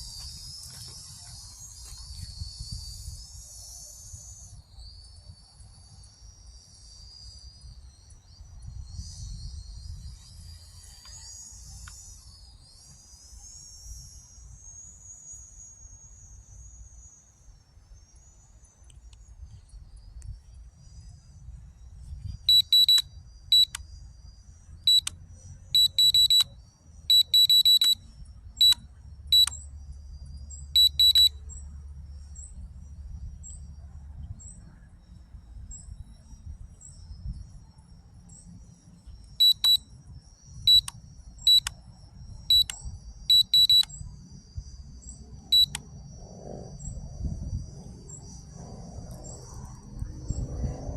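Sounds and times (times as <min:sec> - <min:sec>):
crickets chirping: 0:00.0 - 0:50.9
high-pitched electronic beeps: 0:22.5 - 0:23.8, 0:24.9 - 0:25.1, 0:25.8 - 0:28.0, 0:28.6 - 0:29.6, 0:30.8 - 0:31.4, 0:39.3 - 0:39.9, 0:40.6 - 0:41.7, 0:42.5 - 0:43.9, 0:45.6 - 0:45.8.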